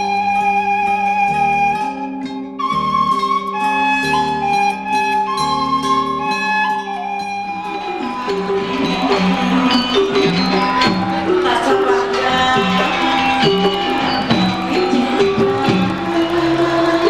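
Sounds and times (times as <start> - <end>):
flute melody: 0.0 - 17.0
plucked strings: 7.4 - 17.0.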